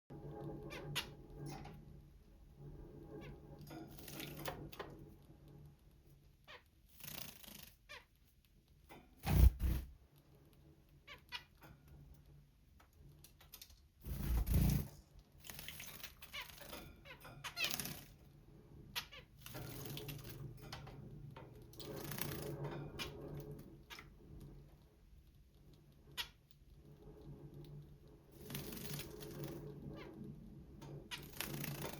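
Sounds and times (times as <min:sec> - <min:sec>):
wings flapping: 0:09.2 - 0:09.9.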